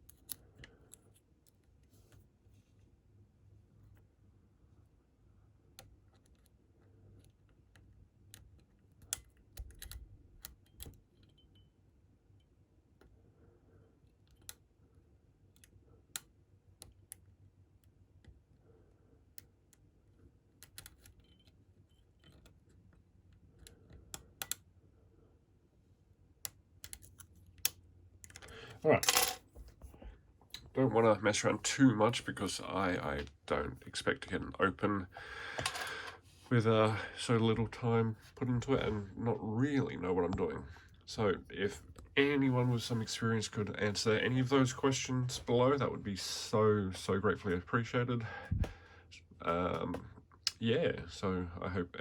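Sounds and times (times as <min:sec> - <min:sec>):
lock picks clicking in a lock: 0:08.4 - 0:11.4.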